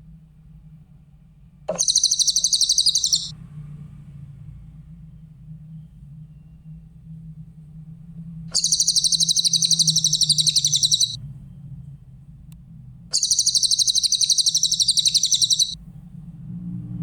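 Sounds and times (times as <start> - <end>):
bird singing trilled phrases: 1.7 - 3.3, 8.6 - 11.2, 13.2 - 15.8
steady low hum: 1.7 - 3.3, 7.9 - 11.4, 12.4 - 15.8.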